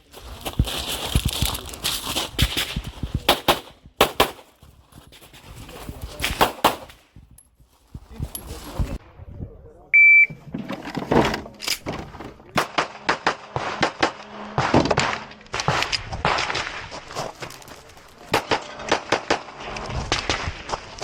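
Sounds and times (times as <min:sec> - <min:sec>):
rapid pistol shots: 0:03.3 - 0:04.5, 0:06.3 - 0:07.0, 0:12.6 - 0:16.7.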